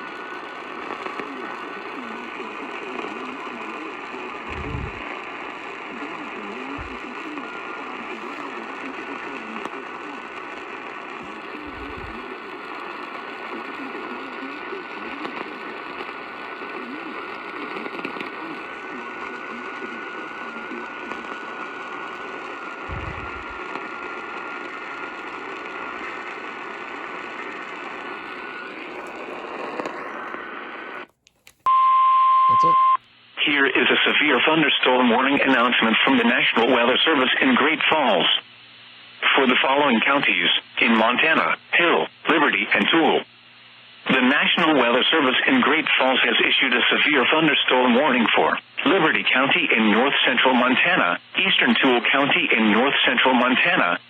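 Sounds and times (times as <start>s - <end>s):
radio static hiss: 0.0s - 31.8s, 32.4s - 54.0s
high whine: 0.0s - 33.0s
faint garbled murmur: 0.2s - 31.0s.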